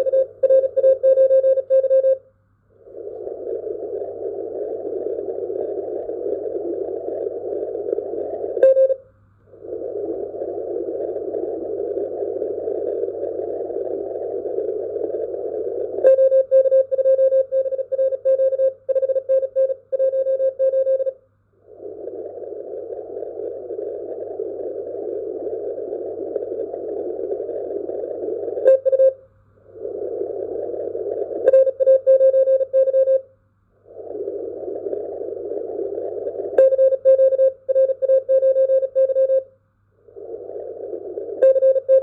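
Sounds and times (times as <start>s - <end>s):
radio band noise hiss: 0.0s - 1.6s, 2.7s - 17.5s, 21.6s - 33.2s, 33.8s - 42.0s
morse code tone: 0.0s - 2.2s, 8.6s - 9.0s, 28.6s - 29.2s, 36.6s - 39.5s, 41.4s - 42.0s
faint mains hum: 0.0s - 42.0s.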